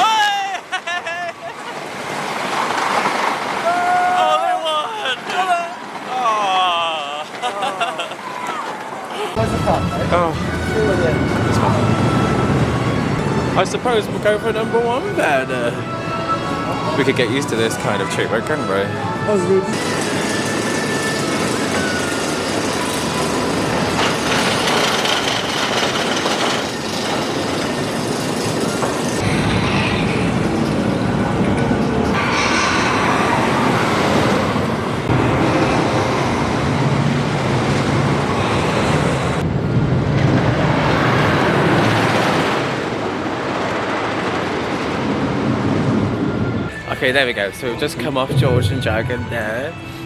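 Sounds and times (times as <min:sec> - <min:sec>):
roller coaster wheels clattering: 0:01.5 - 0:04.1, 0:07.2 - 0:15.5, 0:19.7 - 0:46.5
rushing air: 0:32.0 - 0:46.5, 0:48.2 - 0:50.0.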